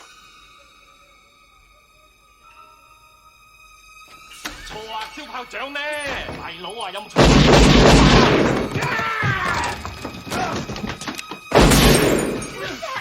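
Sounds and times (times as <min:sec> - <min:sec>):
gunfire blasts: 0:07.2 - 0:09.0, 0:11.5 - 0:12.6.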